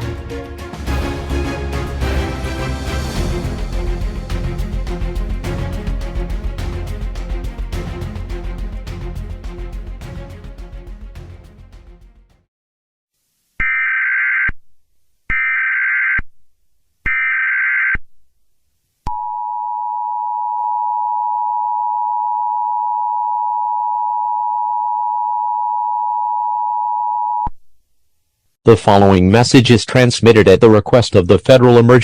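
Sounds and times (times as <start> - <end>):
background music: 0.0 - 12.5.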